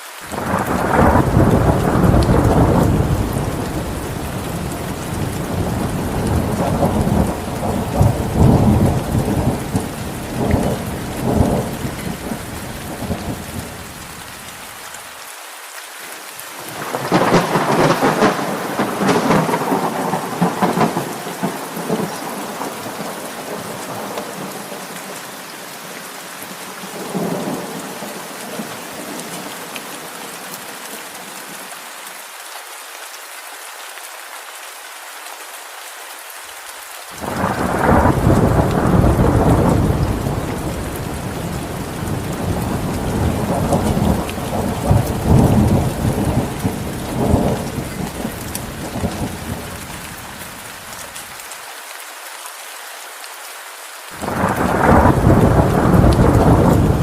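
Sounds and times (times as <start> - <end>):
steady rain: 0.0 - 57.0
rolling thunder: 0.4 - 13.7, 16.8 - 24.5, 37.2 - 49.7, 54.2 - 57.0.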